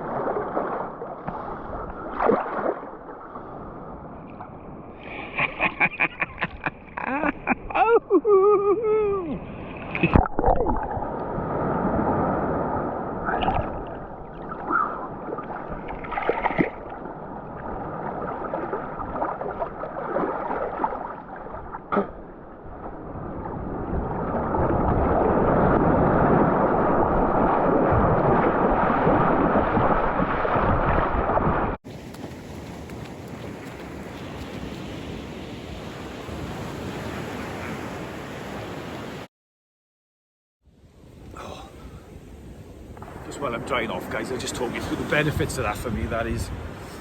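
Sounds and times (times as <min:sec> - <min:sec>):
sharp water splashes: 0:00.0 - 0:03.3, 0:13.2 - 0:22.4
sea water sloshing around swimmer: 0:00.0 - 0:05.1, 0:09.4 - 0:38.7.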